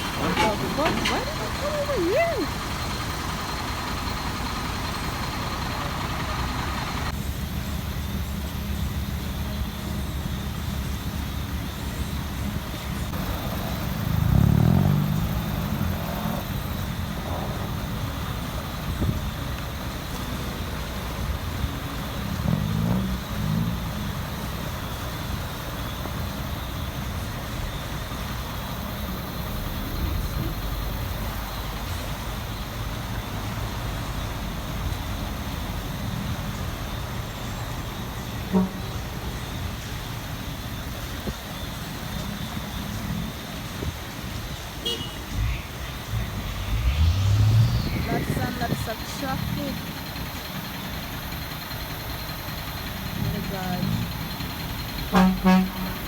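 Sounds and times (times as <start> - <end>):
traffic engine rumble: 0.0 - 56.0
vehicle passing by: 13.0 - 25.8, 42.8 - 51.4.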